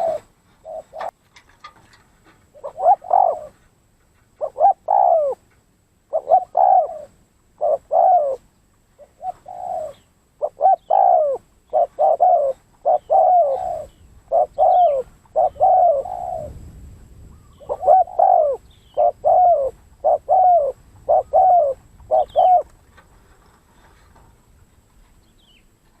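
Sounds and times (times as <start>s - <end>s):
dove cooing: 0.0s - 1.2s, 2.5s - 3.6s, 4.4s - 5.4s, 6.1s - 16.6s, 17.3s - 22.7s.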